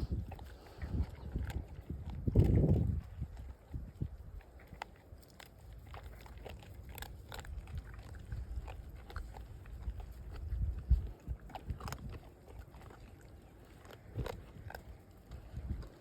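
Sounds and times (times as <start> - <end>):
animals crunching food: 0.0 - 16.0.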